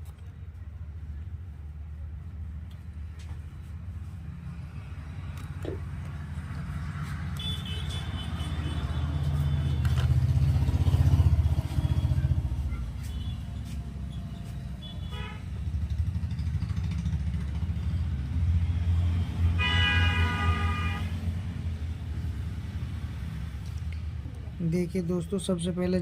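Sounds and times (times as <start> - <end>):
vehicle engines rumbling: 0.0 - 26.0
car horns honking: 7.4 - 9.9, 14.8 - 15.5, 19.6 - 21.2.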